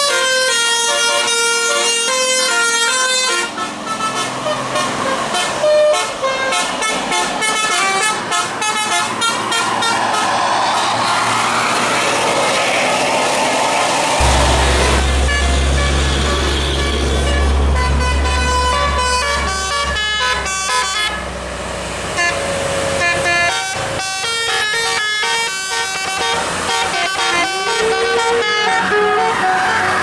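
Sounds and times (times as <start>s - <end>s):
bus engine drone: 0.0s - 30.0s
musical air horn melody: 14.2s - 20.7s.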